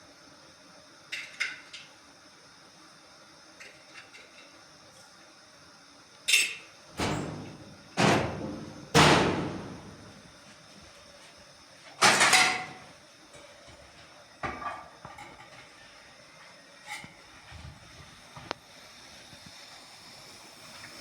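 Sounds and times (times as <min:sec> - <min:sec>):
heavy ringing bangs: 0:07.0 - 0:10.3.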